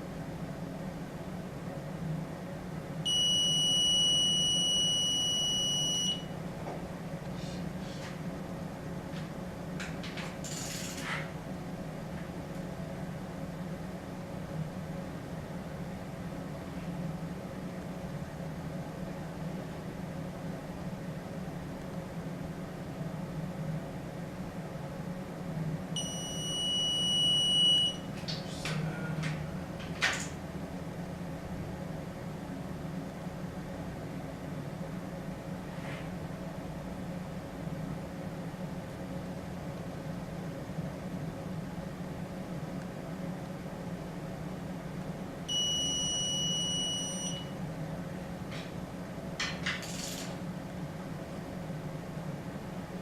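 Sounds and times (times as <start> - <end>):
electronic beep: 45.5 - 47.5.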